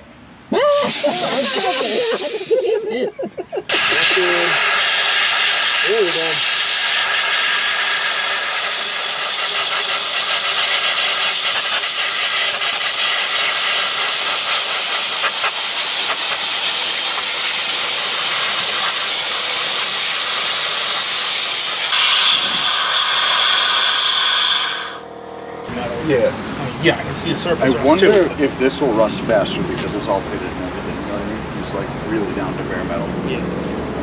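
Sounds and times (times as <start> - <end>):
sandblaster hissing: 0.7 - 3.1, 3.7 - 25.0.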